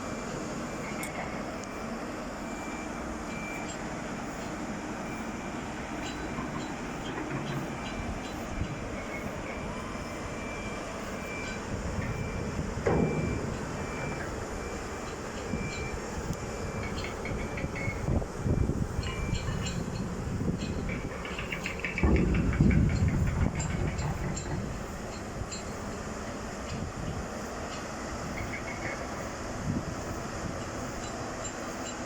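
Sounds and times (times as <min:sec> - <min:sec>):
heavy machinery running: 0:00.0 - 0:32.0
high warning beep: 0:00.1 - 0:21.0.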